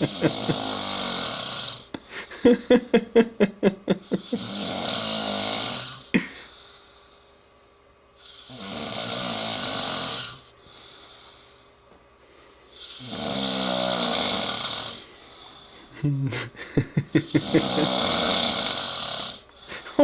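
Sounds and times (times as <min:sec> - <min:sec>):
man snoring loudly: 0:00.0 - 0:02.6, 0:04.1 - 0:06.1, 0:08.2 - 0:10.5, 0:12.8 - 0:15.1, 0:17.1 - 0:20.0.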